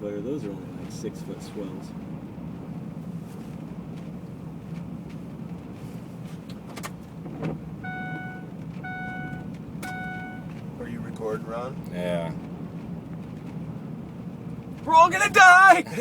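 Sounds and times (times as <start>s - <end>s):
ferry low rumble: 0.0s - 15.6s
short electronic beeps: 7.8s - 10.5s.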